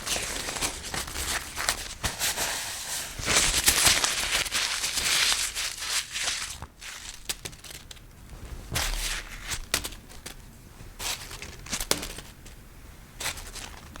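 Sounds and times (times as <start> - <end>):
paper being crumpled: 0.0 - 8.0.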